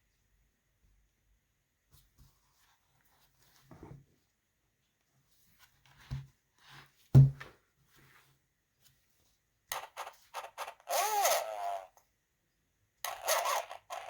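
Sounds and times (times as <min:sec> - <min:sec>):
knocks and taps on cardboard book: 0:07.2 - 0:07.5.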